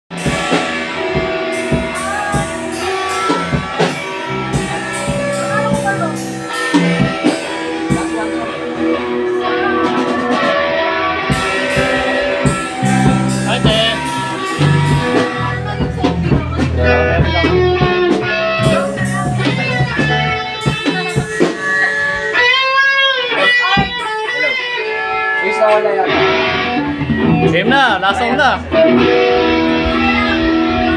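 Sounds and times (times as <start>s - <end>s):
bass line: 0.1s - 22.6s, 26.1s - 30.9s
drum and cymbal hits: 0.1s - 24.6s
electric guitar: 0.1s - 30.9s.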